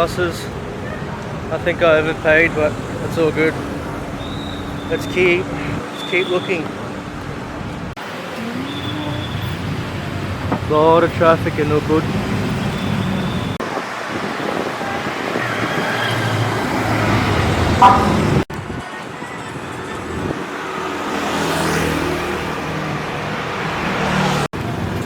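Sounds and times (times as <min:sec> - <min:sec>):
passing vehicles: 0:00.0 - 0:25.0
car horn toot: 0:17.8 - 0:18.4.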